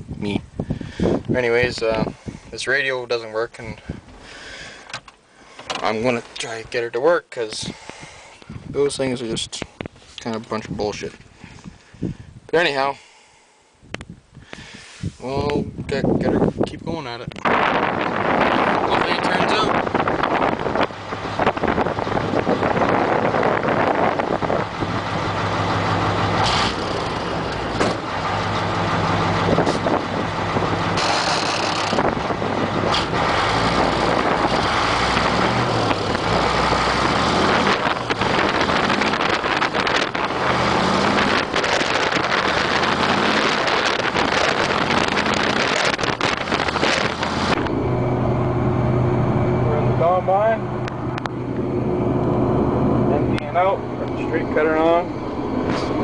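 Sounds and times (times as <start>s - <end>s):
heavy vehicle engine under load: 17.5s - 56.0s
knocks and rattles: 26.4s - 28.8s, 29.4s - 47.7s.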